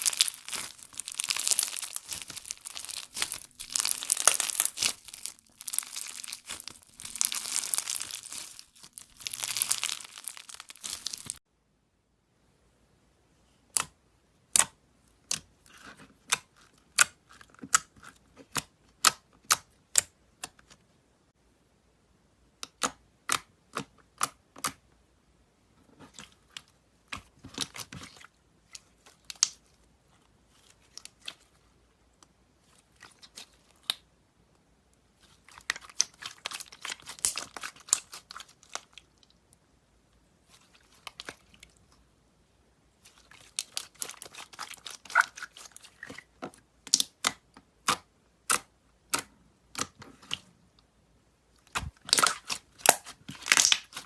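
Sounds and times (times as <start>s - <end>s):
slime squeezed with wet pops: 0.0s - 11.4s, 43.1s - 50.5s, 51.7s - 54.0s.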